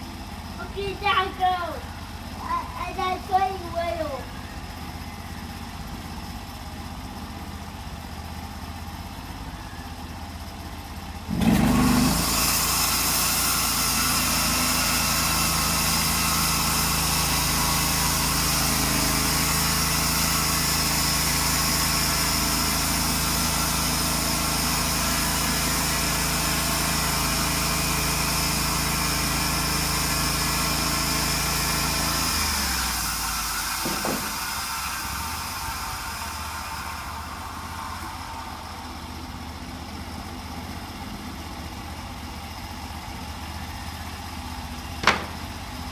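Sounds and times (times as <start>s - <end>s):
sawmill engine: 0.0s - 45.9s
hissing saw: 0.6s - 4.7s, 11.4s - 41.9s.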